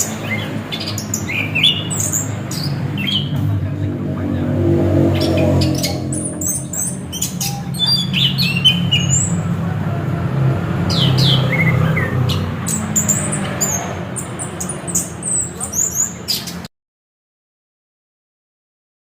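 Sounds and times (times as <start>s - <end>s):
thrush singing chirps and whistles: 0.0s - 3.4s, 5.3s - 9.6s
steady low hum: 0.0s - 10.6s.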